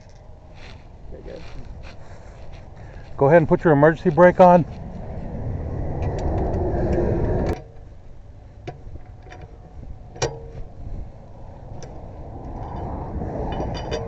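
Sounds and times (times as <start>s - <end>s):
low rumble of vehicle: 0.0s - 14.0s
sharp metallic clicks and clinks: 12.5s - 14.0s.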